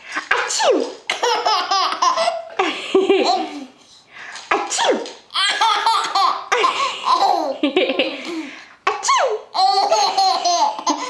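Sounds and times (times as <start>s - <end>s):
baby laughing: 1.1s - 3.8s, 5.3s - 11.0s.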